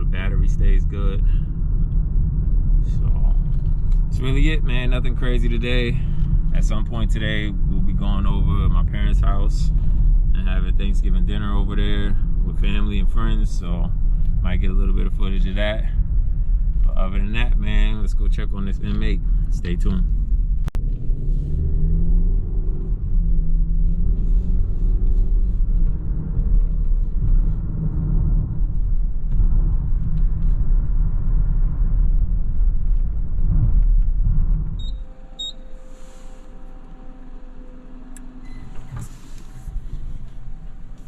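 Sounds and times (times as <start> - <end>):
car engine and road rumble: 0.0 - 41.0
quiet steady tones: 31.9 - 41.0
short beeps: 34.8 - 37.1, 38.4 - 38.8.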